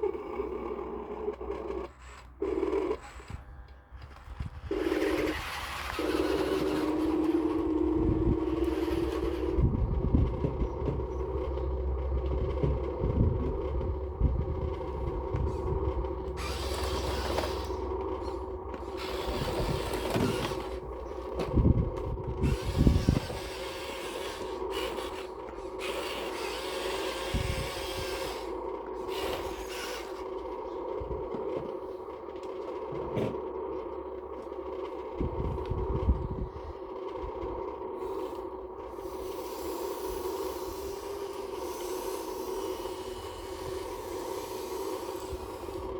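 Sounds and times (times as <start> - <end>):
electric motors whining: 0.0 - 45.9.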